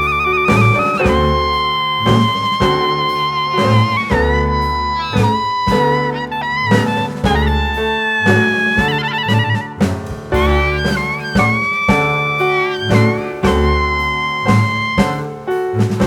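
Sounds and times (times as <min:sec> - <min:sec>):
plucked bass beat: 0:00.0 - 0:16.0.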